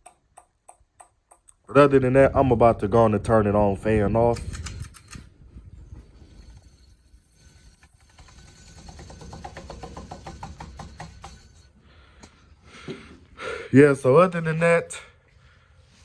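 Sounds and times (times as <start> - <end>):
rapid rhythmic ticking: 7.7 - 11.7.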